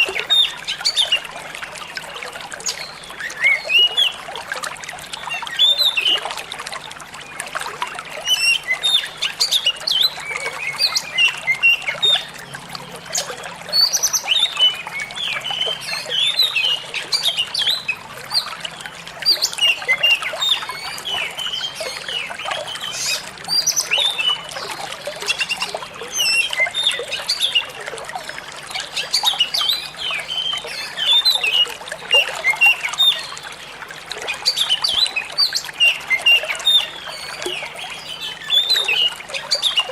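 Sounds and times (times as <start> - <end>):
water trickling: 0.0 - 39.9
bird singing chirps and whistles: 8.2 - 12.3, 19.2 - 24.5, 25.3 - 27.8, 34.4 - 39.9.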